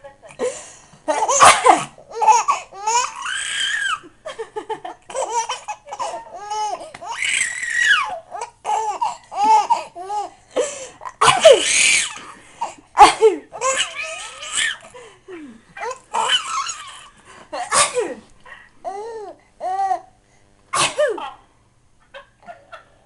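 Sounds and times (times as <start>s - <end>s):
baby laughing: 1.1s - 4.1s, 4.9s - 10.3s, 11.1s - 14.9s, 15.8s - 17.1s
adult fake coughing: 1.3s - 2.0s, 11.2s - 11.6s, 13.0s - 13.4s, 17.6s - 18.2s, 20.8s - 21.4s.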